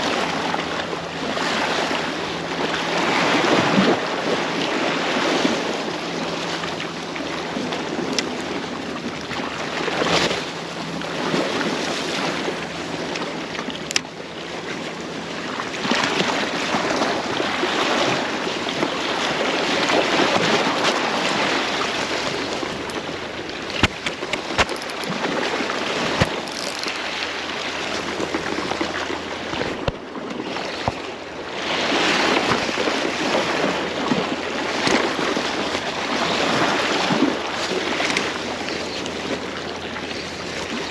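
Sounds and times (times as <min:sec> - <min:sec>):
surf on rocky shore: 0:00.0 - 0:40.9
sharp clicks: 0:23.7 - 0:25.2, 0:26.2 - 0:27.2.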